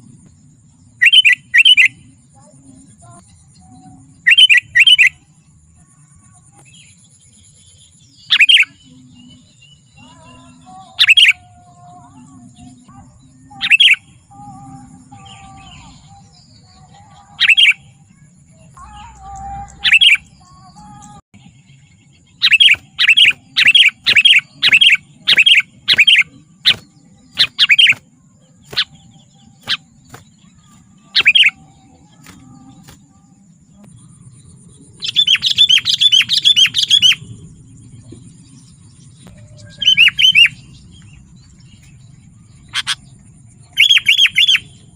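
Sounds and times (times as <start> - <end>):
bulbul calling: 1.0 - 2.1, 4.3 - 5.2, 8.2 - 9.0, 10.0 - 11.5, 13.5 - 14.5, 16.8 - 17.8, 18.8 - 21.2, 22.3 - 34.2, 34.9 - 37.5, 39.2 - 44.9
bird chattering: 8.3 - 8.8, 10.8 - 11.4, 17.4 - 17.8, 19.0 - 20.3, 22.4 - 28.0, 28.7 - 29.0, 29.6 - 32.8, 34.9 - 37.3, 39.4 - 40.8, 42.6 - 44.8.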